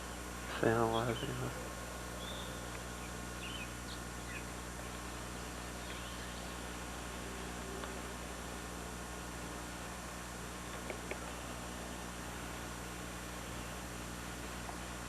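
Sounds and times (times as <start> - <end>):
faint bird chirps: 0.0 - 4.6, 5.4 - 8.2
low hum: 0.0 - 15.0
steady hiss: 0.0 - 15.0.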